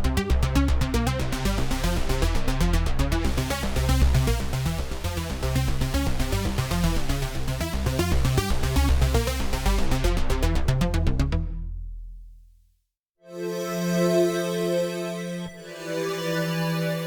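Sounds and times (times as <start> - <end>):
heavy synth bass: 0.0 - 12.2
synthesizer arpeggio: 13.3 - 17.0.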